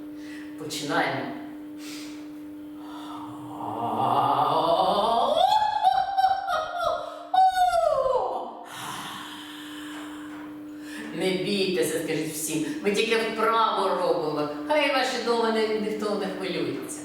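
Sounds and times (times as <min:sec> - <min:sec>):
person singing vocal warm-up: 0:02.8 - 0:10.3.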